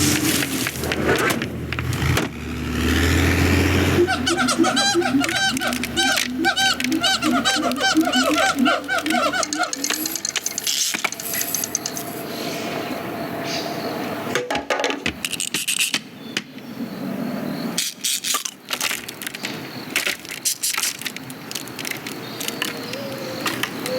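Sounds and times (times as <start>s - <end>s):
sharp clicks knocks and rattles: 4.1s - 12.1s.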